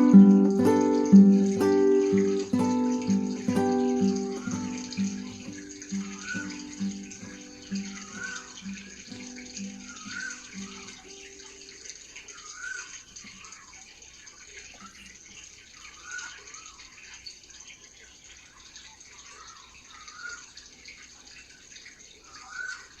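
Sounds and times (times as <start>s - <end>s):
birds calling: 0.0s - 13.7s, 21.9s - 23.0s
running water: 0.0s - 23.0s
rising and falling bird call: 3.4s - 11.1s.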